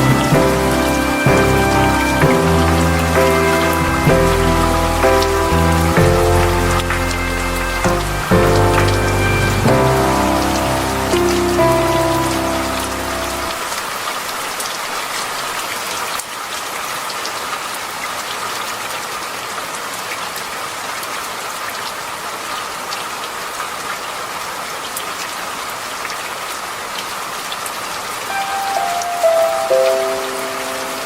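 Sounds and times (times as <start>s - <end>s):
soft musical tones: 0.0s - 13.7s, 28.3s - 31.0s
steady rain patter: 0.0s - 31.0s.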